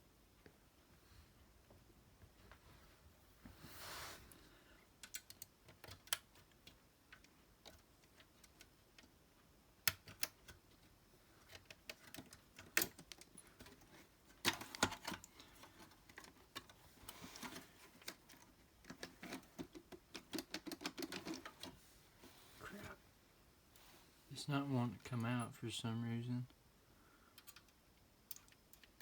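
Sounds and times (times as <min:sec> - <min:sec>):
plastic console being handled: 0:09.9 - 0:23.0.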